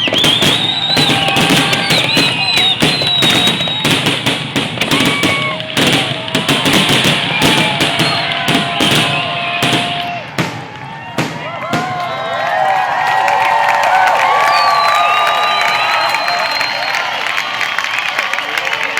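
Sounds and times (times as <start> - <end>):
fireworks whistling: 0.0 - 12.4, 14.5 - 18.0
fireworks bangs and crackles: 0.0 - 12.7.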